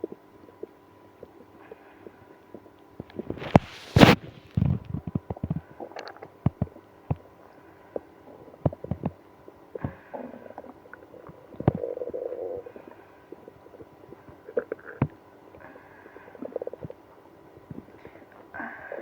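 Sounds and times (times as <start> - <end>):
stomach growling and gurgling: 0.0 - 19.0.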